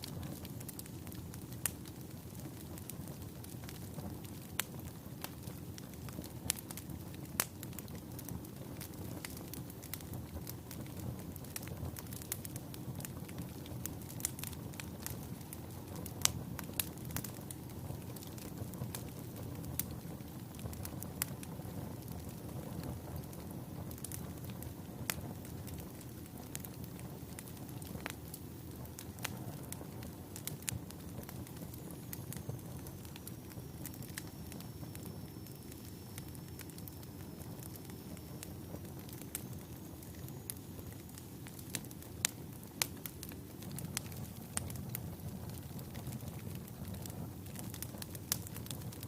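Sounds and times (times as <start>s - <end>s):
fire rumbling in a fireplace: 0.0s - 49.0s
wood crackling and popping: 0.0s - 49.0s.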